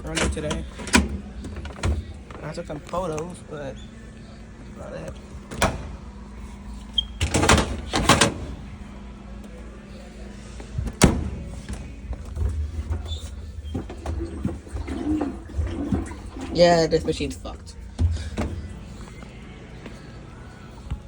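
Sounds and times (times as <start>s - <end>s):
washing machine door clunks: 0.0s - 2.2s, 5.5s - 6.0s, 7.2s - 8.7s, 10.8s - 17.0s, 17.7s - 18.8s.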